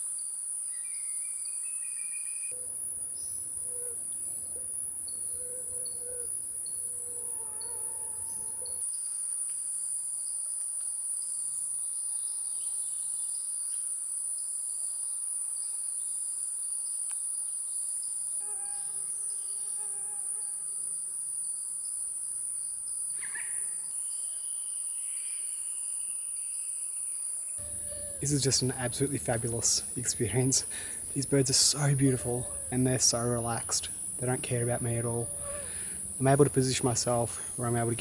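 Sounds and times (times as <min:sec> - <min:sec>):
insect chorus drone: 0:00.0 - 0:38.0
bird calls: 0:27.6 - 0:38.0.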